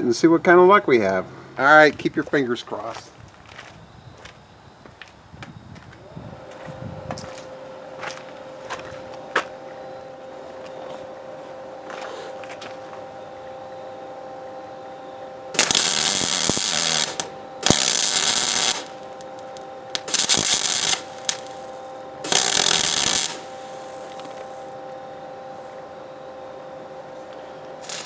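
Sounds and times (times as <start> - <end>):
welder hum: 5.8 - 28.0
welder arc crackling: 15.5 - 25.0, 27.8 - 28.0.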